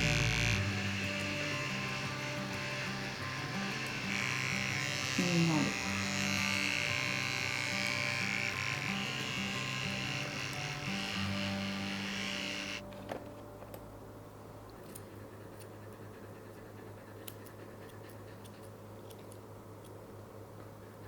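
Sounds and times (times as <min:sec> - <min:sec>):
electric clippers buzzing: 0:00.0 - 0:12.9.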